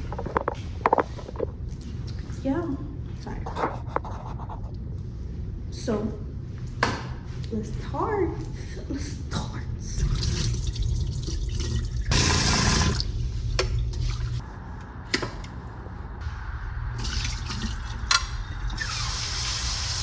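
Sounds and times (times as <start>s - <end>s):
steady low hum: 0.0s - 20.0s
tap water running into sink: 10.0s - 14.4s, 17.0s - 20.0s.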